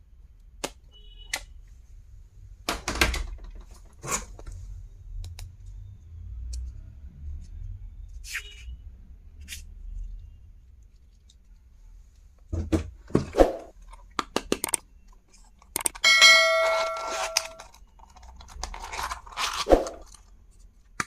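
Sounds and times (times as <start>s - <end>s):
stationery clicks and taps: 14.0s - 14.8s, 15.6s - 16.1s.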